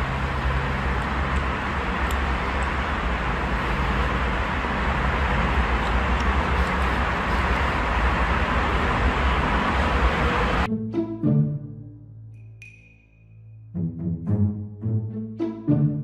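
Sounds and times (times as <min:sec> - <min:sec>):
moving vehicle rumble: 0:00.0 - 0:10.8.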